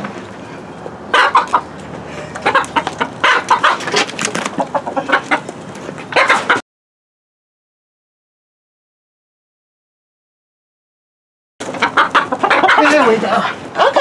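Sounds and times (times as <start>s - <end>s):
chickens squawking and clucking: 0.0s - 6.6s, 11.6s - 14.0s.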